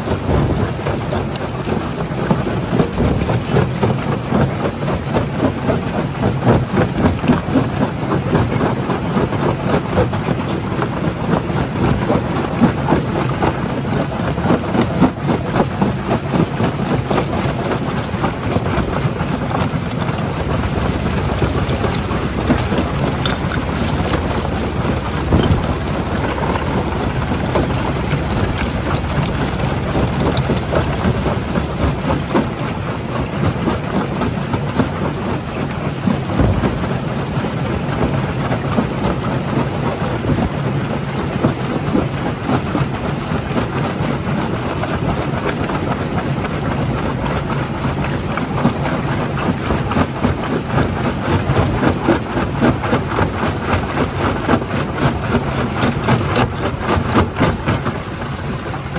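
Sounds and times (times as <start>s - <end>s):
crusher machine drone: 17.7s - 34.5s, 36.0s - 38.0s
rock knocking and cracking: 19.9s - 31.7s.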